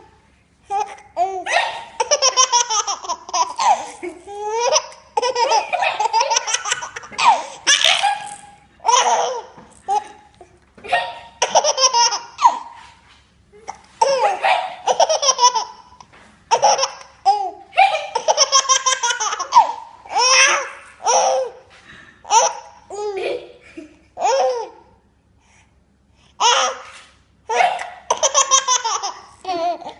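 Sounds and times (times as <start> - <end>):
high-pitched giggling: 0.8 - 12.8.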